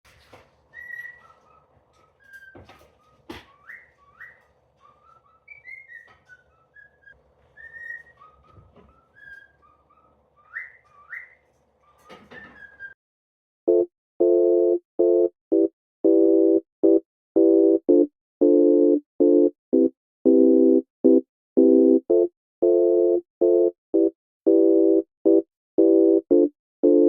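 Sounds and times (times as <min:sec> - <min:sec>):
cockatiel whistling: 0:00.7 - 0:13.0.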